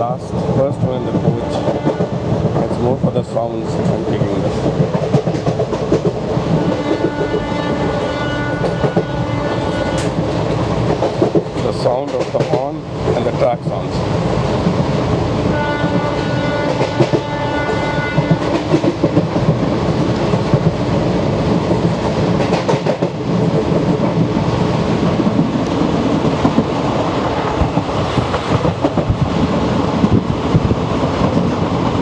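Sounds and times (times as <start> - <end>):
train wheels clattering over rail joints: 0.4 - 7.5, 9.8 - 13.5, 16.6 - 31.8
locomotive horn blast: 1.4 - 2.3, 6.6 - 10.2, 15.5 - 18.6.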